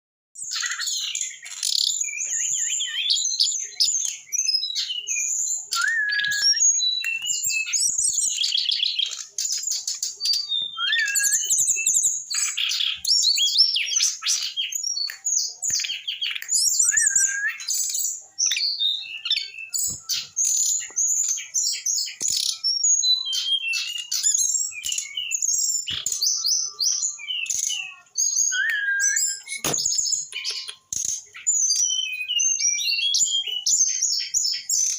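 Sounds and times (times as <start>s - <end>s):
bird singing trills and whistles: 0.4s - 34.9s.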